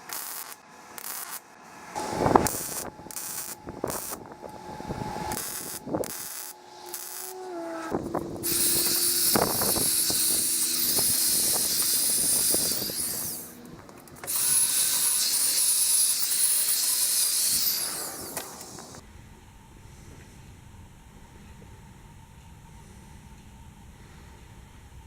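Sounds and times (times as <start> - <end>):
power tool running: 0.0 - 19.0.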